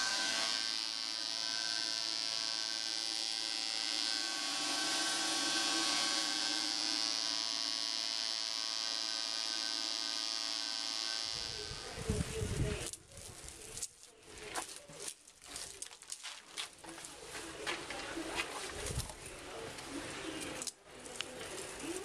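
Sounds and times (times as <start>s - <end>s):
air compressor hum: 0.0s - 12.8s.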